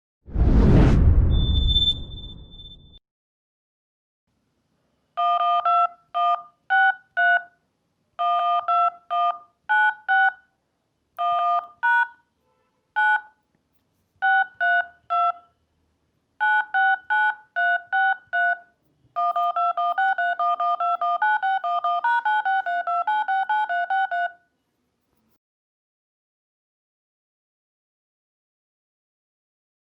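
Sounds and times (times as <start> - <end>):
telephone keypad dialing beeps: 5.2 - 7.5, 8.2 - 10.4, 11.2 - 12.1, 13.0 - 13.3, 14.2 - 15.4, 16.4 - 24.4.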